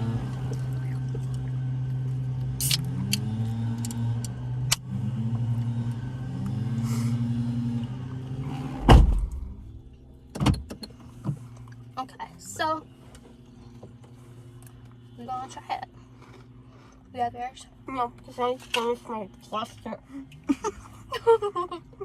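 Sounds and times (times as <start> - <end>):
car engine humming: 0.0 - 22.0
loud thump: 8.8 - 9.6.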